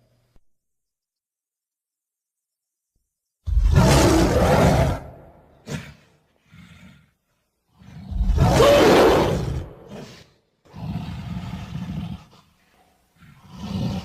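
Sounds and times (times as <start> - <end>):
deep monster roar: 3.5 - 6.0, 7.8 - 12.3.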